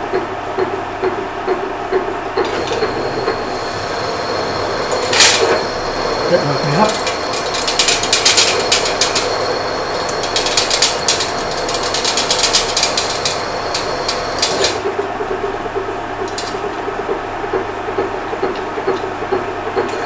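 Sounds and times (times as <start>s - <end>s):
drill cutting steel with chattering clicks: 2.4s - 15.1s, 16.2s - 16.8s
drill motor humming: 2.4s - 15.3s.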